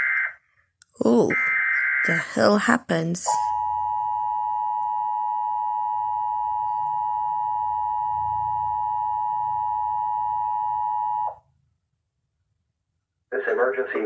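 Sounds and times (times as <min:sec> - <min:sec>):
two-tone alert alarm: 0:01.1 - 0:02.5, 0:03.3 - 0:11.4.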